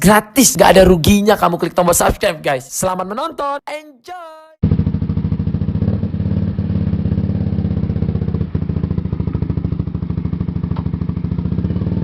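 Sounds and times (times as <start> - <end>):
motorcycle engine running: 4.6 - 12.0.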